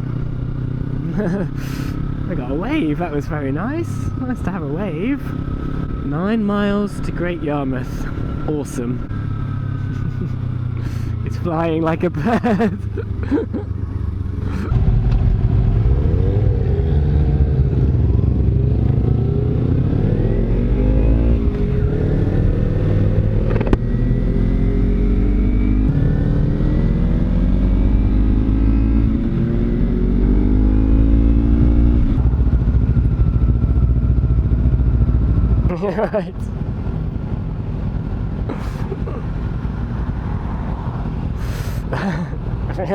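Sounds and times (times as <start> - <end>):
motorcycle engine accelerating: 0.0 - 42.9
wind rushing over microphone: 39.2 - 41.7.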